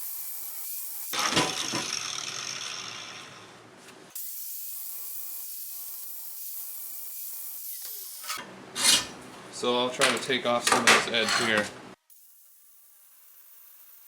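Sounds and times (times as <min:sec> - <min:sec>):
power tool motor whine: 0:01.1 - 0:03.5.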